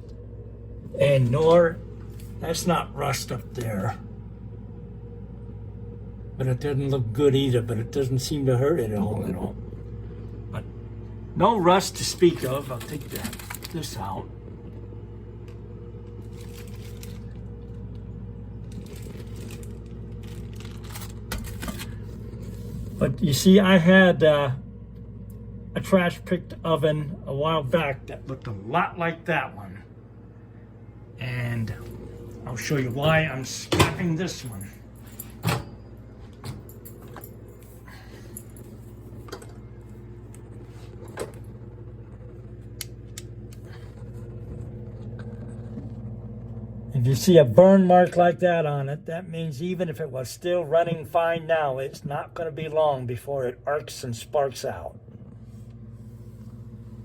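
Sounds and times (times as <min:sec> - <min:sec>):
steady low hum: 0:00.0 - 0:57.0
parts clicking and clattering: 0:12.3 - 0:13.8
microwave door clicks and knocks: 0:33.7 - 0:34.1.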